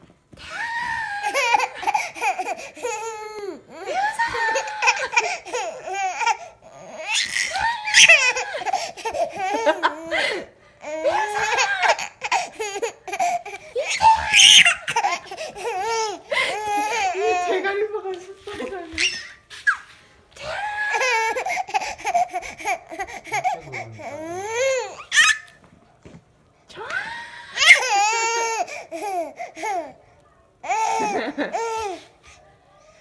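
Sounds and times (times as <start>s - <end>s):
child laughing: 1.1s - 6.4s, 7.2s - 17.6s, 30.7s - 32.0s.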